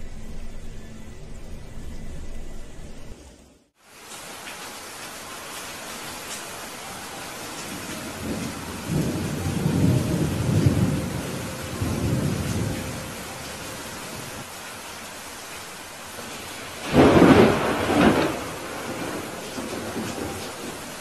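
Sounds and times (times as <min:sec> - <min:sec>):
steady rain: 0:03.7 - 0:21.0
thunder rumbling: 0:05.7 - 0:14.5, 0:16.2 - 0:21.0.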